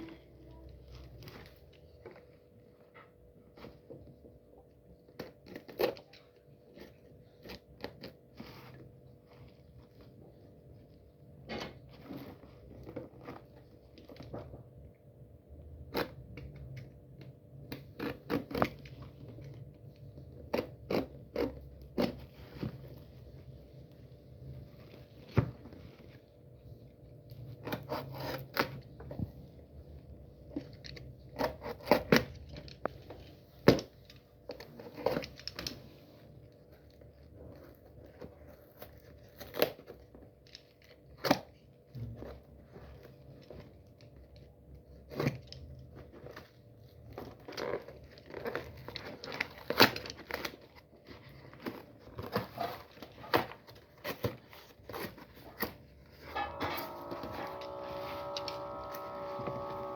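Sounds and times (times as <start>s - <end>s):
packaging crinkling and scraping: 0.1s - 15.0s, 15.8s - 59.9s
faint steady hum: 50.3s - 59.9s.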